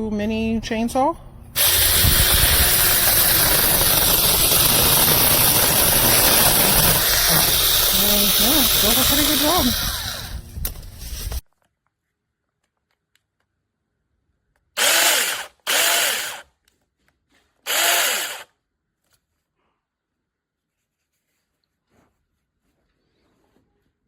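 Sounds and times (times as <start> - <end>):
electric chainsaw running: 1.6 - 11.4, 14.8 - 16.4, 17.7 - 18.5.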